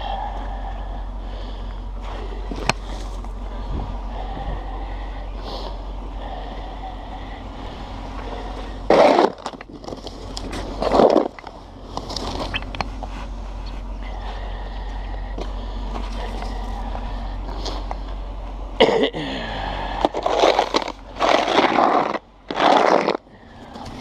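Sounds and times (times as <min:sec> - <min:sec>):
snow shovel scraping: 0:08.9 - 0:09.5, 0:20.2 - 0:23.2.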